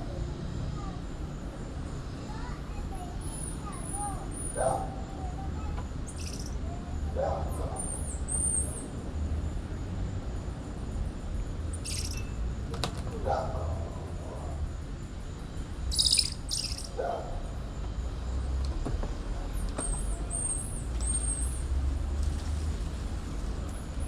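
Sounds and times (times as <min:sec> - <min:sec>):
steady high insect tone: 0:00.0 - 0:22.2
high chirping animal calls: 0:06.1 - 0:06.6, 0:11.8 - 0:12.4, 0:15.9 - 0:17.0.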